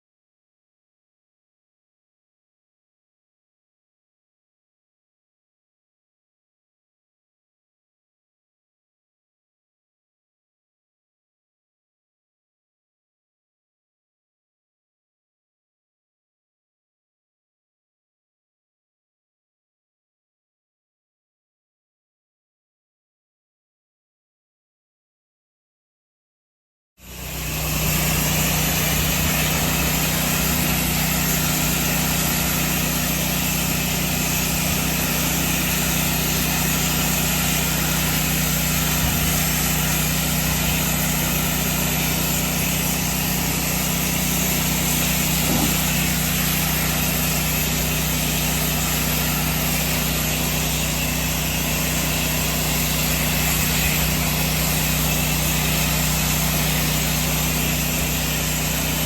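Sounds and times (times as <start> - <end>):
high-pressure water spray hiss: 27.0 - 59.0
pressure washer engine running: 27.0 - 59.0.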